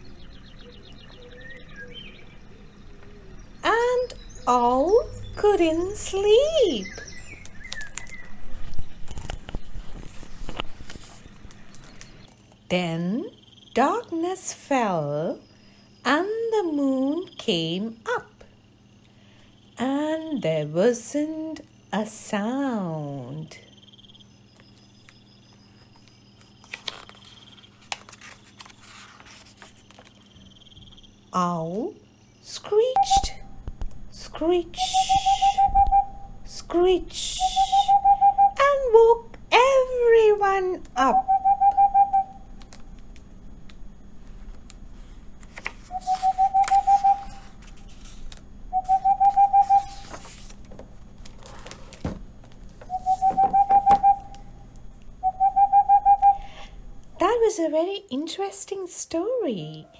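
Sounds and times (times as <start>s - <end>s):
crickets trilling: 0.0s - 57.0s
owl trilling: 34.8s - 36.3s, 37.3s - 38.8s, 41.0s - 42.4s, 45.9s - 47.5s, 48.7s - 50.2s, 52.9s - 54.4s, 55.2s - 56.6s.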